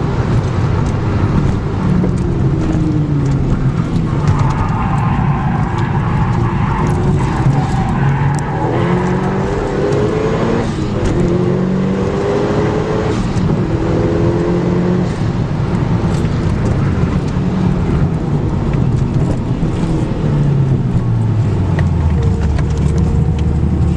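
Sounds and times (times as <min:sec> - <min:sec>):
car engine revving: 0:00.0 - 0:23.9.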